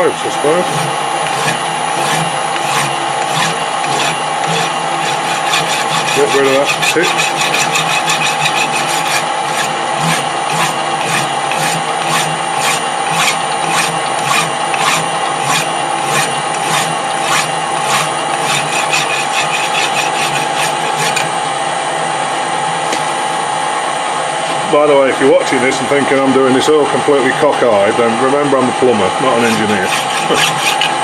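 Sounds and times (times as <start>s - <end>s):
hand file scraping metal: 0.0s - 21.4s, 29.2s - 31.0s
lathe humming: 0.0s - 31.0s.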